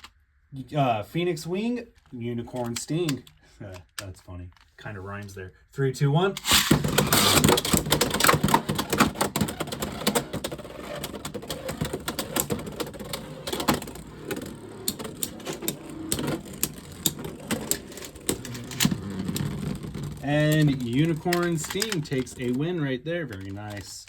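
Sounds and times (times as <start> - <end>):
sharp clicks and knocks: 6.4 - 22.7.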